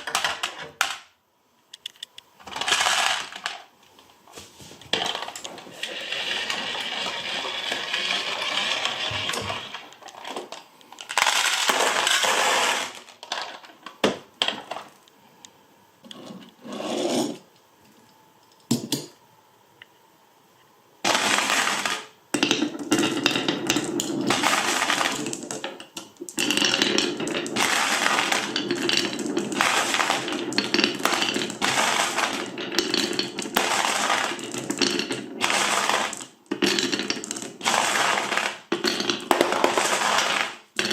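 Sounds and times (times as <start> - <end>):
glass marbles rolling and clattering: 2.4 - 3.7, 4.9 - 13.8, 21.0 - 40.9.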